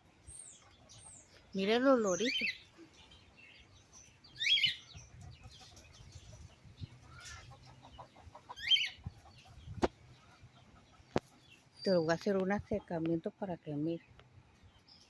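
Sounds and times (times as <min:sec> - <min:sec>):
birds squawking: 0:00.4 - 0:12.1
bird clucking: 0:03.8 - 0:11.7.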